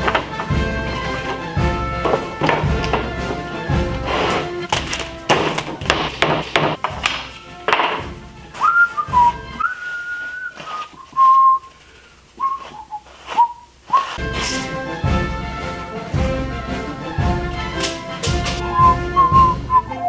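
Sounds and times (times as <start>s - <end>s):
music with strong beats: 0.0s - 9.6s, 14.2s - 20.0s
person whistling a tune: 8.6s - 11.7s, 12.4s - 14.5s, 18.6s - 20.0s.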